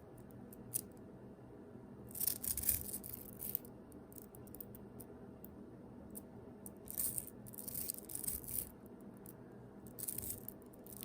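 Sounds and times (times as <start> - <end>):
magnet balls clicking together: 6.7 - 11.0.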